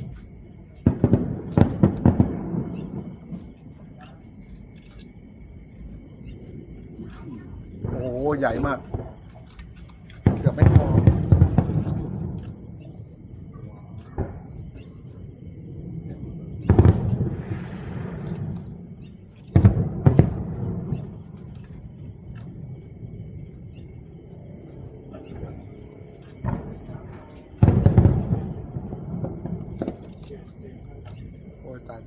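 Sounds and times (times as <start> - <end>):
firework crackling trail: 0.0 - 32.0
fireworks shells booming: 0.0 - 32.0.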